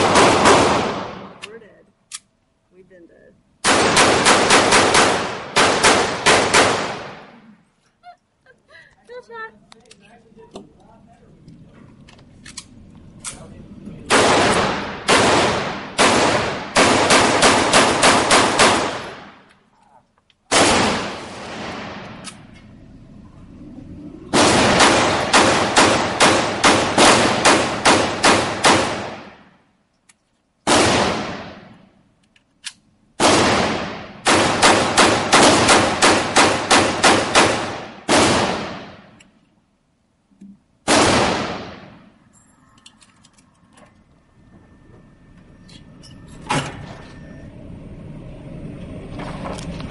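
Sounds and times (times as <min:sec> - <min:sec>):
gunfire shots echoing: 0:00.0 - 0:01.4, 0:03.6 - 0:07.4, 0:14.1 - 0:19.5, 0:20.5 - 0:22.4, 0:24.3 - 0:29.5, 0:30.6 - 0:31.9, 0:33.2 - 0:39.2, 0:40.8 - 0:42.1.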